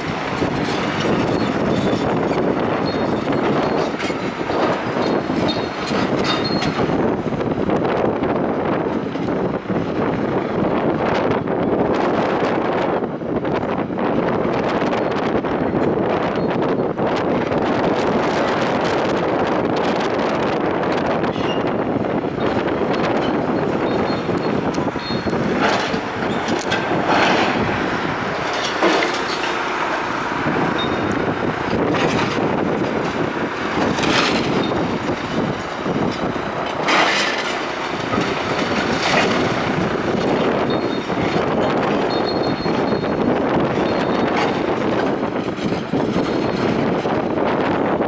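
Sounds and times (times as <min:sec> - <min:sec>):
demolition machinery din: 0:00.0 - 0:48.0
metal scrapes and clanks: 0:22.9 - 0:41.0.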